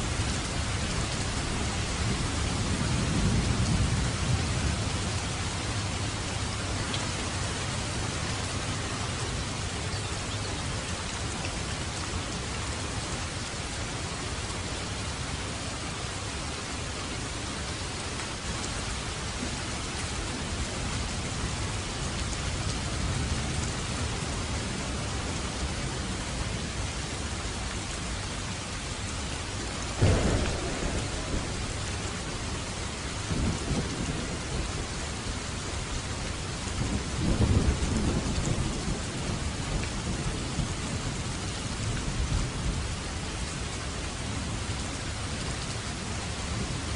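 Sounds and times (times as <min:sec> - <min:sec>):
steady rain falling: 0:00.0 - 0:46.9
loud thunder clap: 0:30.0 - 0:32.7.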